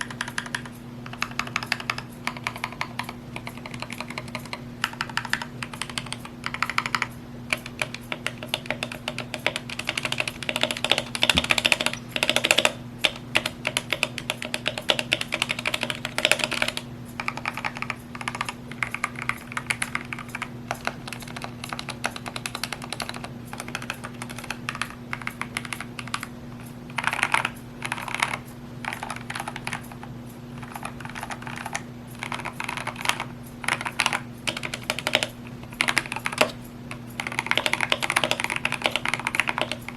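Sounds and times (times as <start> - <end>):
mechanical keyboard typing: 0.0 - 39.9
steady low hum: 0.0 - 39.9.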